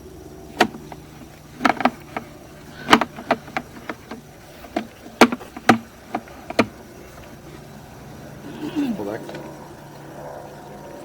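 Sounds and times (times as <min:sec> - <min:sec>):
faint steady hum: 0:00.0 - 0:11.0
cable clicks and knocks: 0:00.5 - 0:07.8.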